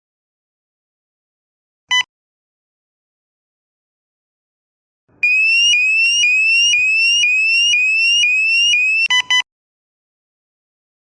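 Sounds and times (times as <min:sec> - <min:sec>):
motion alarm siren: 0:05.2 - 0:09.2.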